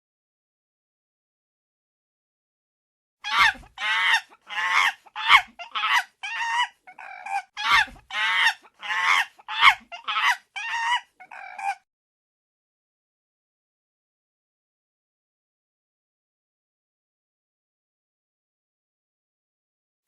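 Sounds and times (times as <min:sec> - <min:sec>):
chimpanzee screeching: 0:03.2 - 0:11.9.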